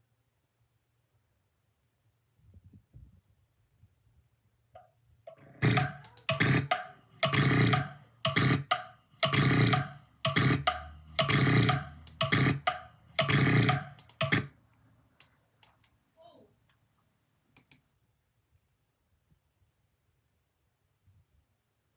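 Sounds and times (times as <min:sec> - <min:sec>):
person snoring loudly: 0:05.4 - 0:14.5.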